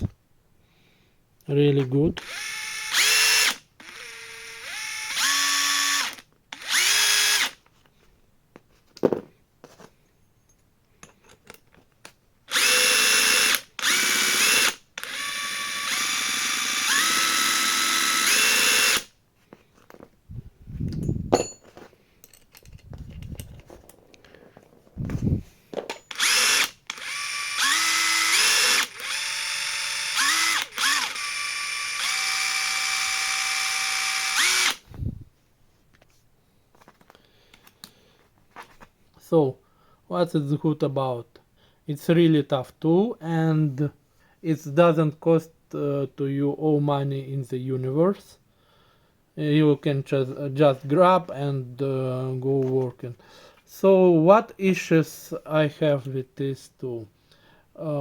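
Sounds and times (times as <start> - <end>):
impact driver motor whining: 2.1 - 7.6, 12.5 - 19.1, 26.1 - 35.2.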